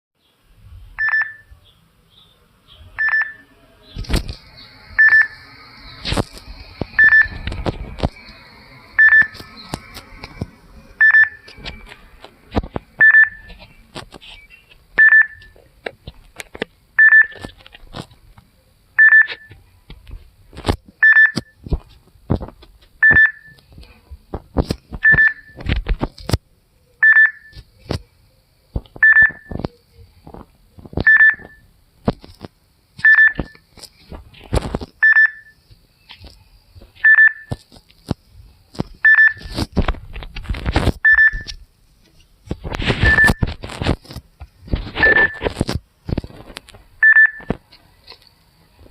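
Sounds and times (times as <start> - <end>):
short high electronic beep: 5.0 - 5.4, 7.0 - 7.4, 9.0 - 9.4, 11.0 - 11.5, 43.0 - 43.4.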